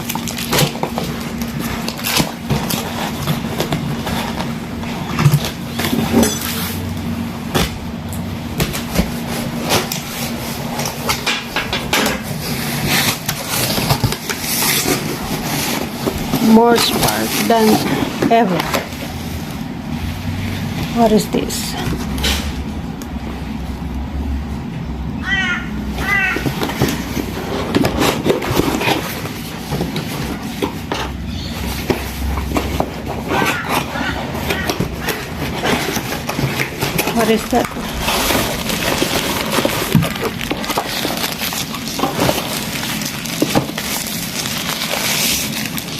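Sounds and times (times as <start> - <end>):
packaging rustling and knocking: 0.0 - 19.6, 26.4 - 45.9
steady low hum: 0.0 - 45.9
short high calls: 25.2 - 26.4.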